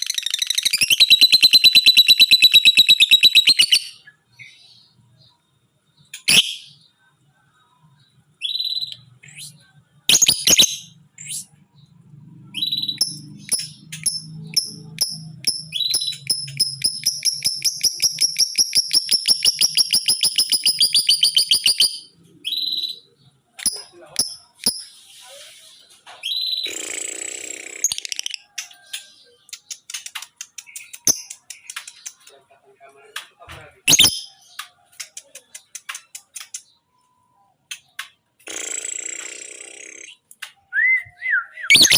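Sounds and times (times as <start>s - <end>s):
rapid chattering bird trill: 26.3s - 32.5s.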